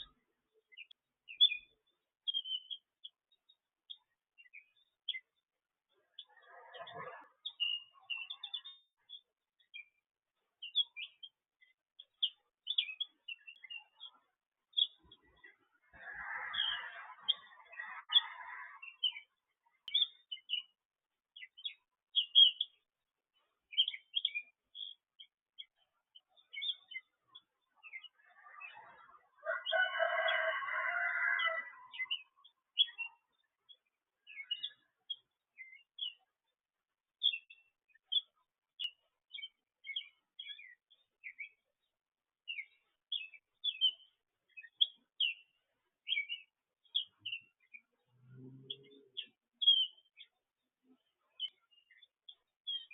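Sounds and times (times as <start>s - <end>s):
songbirds chirping: 0.0s - 52.9s
longer lower bird calls: 10.6s - 20.7s, 26.4s - 36.3s.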